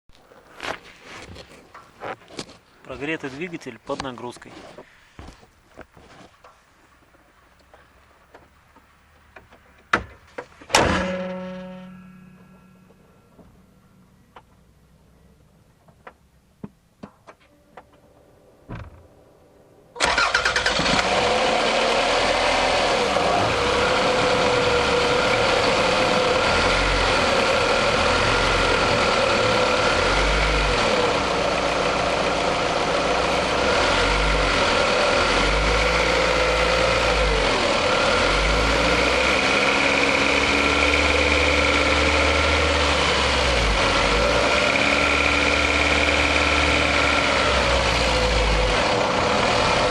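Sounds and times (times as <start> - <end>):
car engine revving under load: 20.0 - 49.9.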